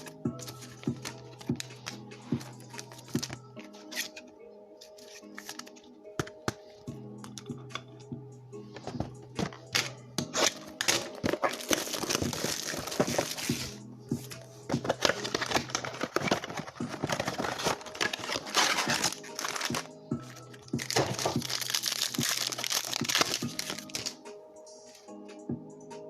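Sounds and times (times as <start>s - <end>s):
cards clicking and rustling: 0.0s - 6.6s, 8.8s - 13.8s, 14.7s - 24.2s
foil wrappers crinkling and tearing: 2.7s - 4.2s, 9.7s - 13.8s, 14.8s - 24.2s.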